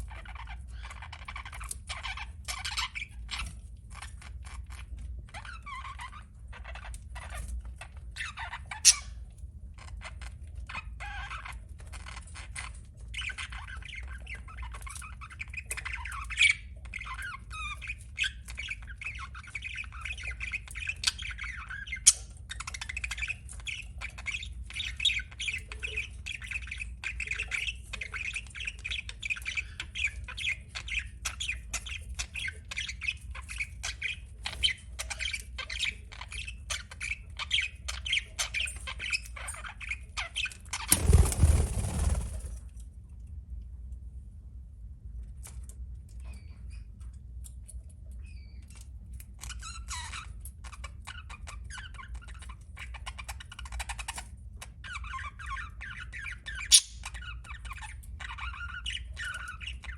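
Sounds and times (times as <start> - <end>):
budgerigar chirps and warbling: 8.2 - 9.2, 55.0 - 57.5.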